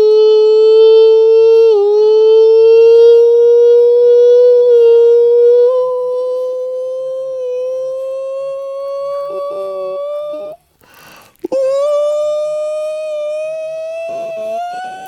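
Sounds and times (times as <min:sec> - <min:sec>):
man singing a long high note: 0:11.5 - 0:15.0.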